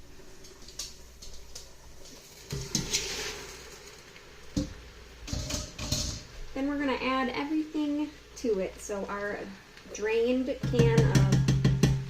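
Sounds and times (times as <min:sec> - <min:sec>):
pasta sliding wet patter: 0:00.0 - 0:06.6
strainer knocking against pot: 0:04.6 - 0:06.3, 0:10.6 - 0:12.0.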